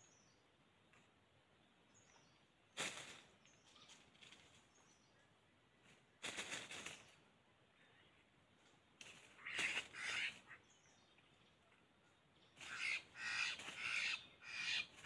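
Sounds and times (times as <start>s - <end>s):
loud rustling bursts: 6.2s - 7.2s.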